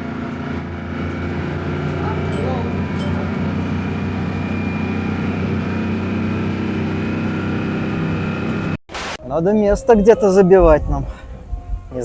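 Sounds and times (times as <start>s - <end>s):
bus engine drone: 0.0s - 8.8s.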